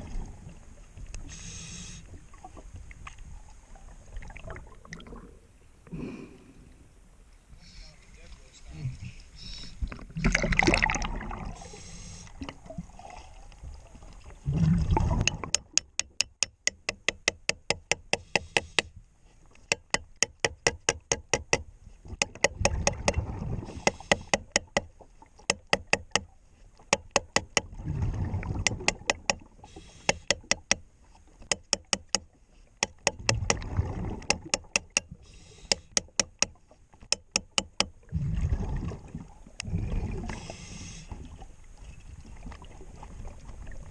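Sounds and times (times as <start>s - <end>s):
regulator bubbles gurgling: 4.0s - 5.5s, 9.9s - 11.7s, 14.2s - 15.7s, 22.5s - 23.9s, 27.6s - 29.6s, 33.2s - 34.6s, 38.0s - 40.6s
hammer striking underwater: 15.1s - 18.9s, 19.7s - 26.3s, 26.9s - 27.7s, 28.6s - 30.8s, 31.4s - 38.0s.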